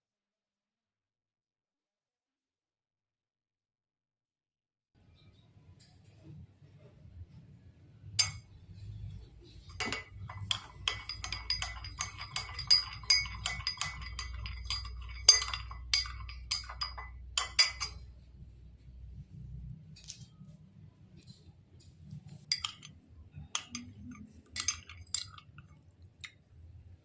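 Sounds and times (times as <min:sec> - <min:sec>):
metal spoon clinking in cup: 0:08.2 - 0:08.5, 0:09.7 - 0:18.1, 0:22.5 - 0:25.6.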